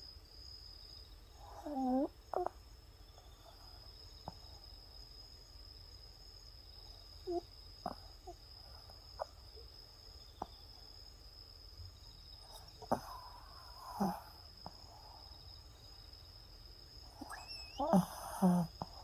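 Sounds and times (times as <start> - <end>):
dog snoring and snuffling: 1.5 - 2.6, 12.5 - 14.4, 17.2 - 19.0.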